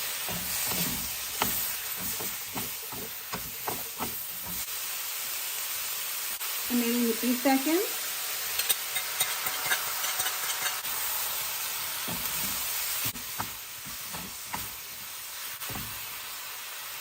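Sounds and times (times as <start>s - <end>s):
meat and vegetables sizzling: 0.0s - 17.0s
utensil clicking against pan: 0.3s - 4.6s.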